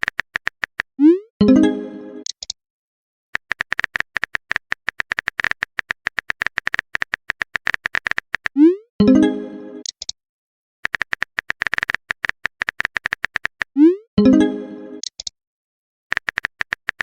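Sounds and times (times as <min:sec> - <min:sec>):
keyboard typing taps: 0:00.0 - 0:00.9, 0:03.4 - 0:08.6, 0:10.8 - 0:13.7, 0:16.1 - 0:17.0.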